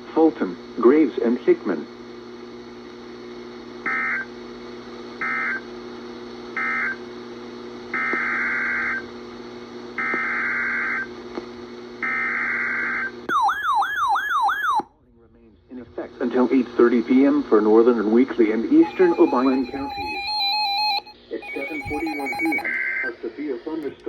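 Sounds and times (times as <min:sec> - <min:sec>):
steady low hum: 0:00.0 - 0:13.4, 0:14.8 - 0:24.0
warbling siren-like alert tone: 0:13.3 - 0:14.8, 0:18.8 - 0:23.2
buzzy two-tone data chirps: 0:18.8 - 0:23.5.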